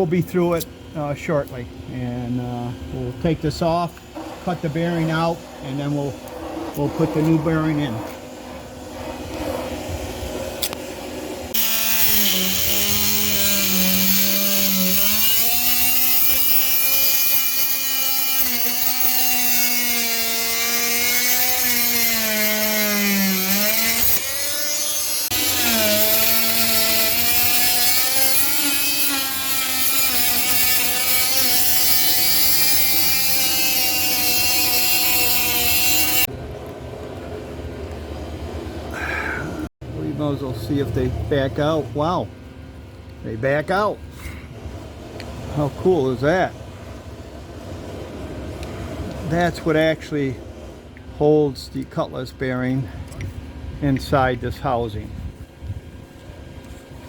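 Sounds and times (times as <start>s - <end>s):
power tool motor whine: 11.5s - 36.3s.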